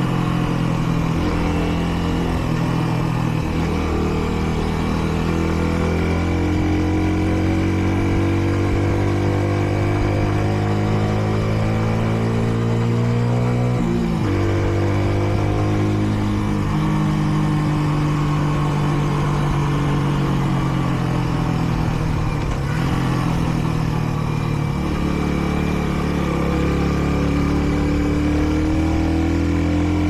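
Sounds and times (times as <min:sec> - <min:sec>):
motorcycle engine: 0:00.0 - 0:30.0.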